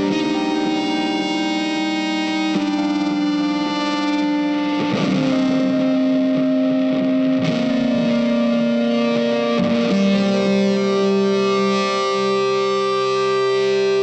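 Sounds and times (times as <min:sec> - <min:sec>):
distorted electric guitar: 0:00.0 - 0:14.0.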